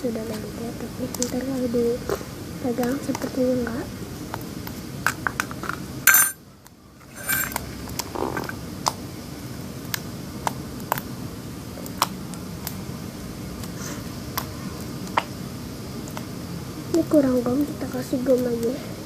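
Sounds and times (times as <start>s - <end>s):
slime clicking and popping: 11.8s - 12.8s.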